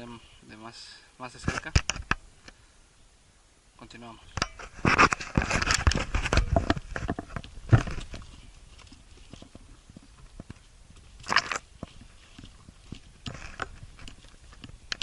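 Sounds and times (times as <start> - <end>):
feet scuffling: 4.6 - 15.0
footsteps on gravel: 4.7 - 15.0.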